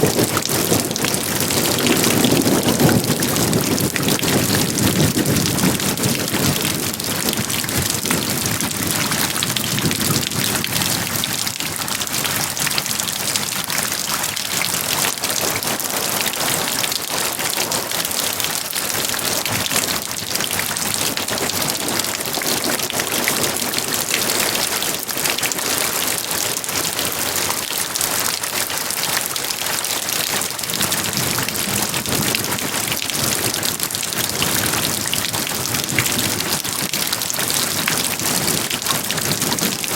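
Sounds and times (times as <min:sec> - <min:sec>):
dense patter of raindrops: 0:00.0 - 0:39.9.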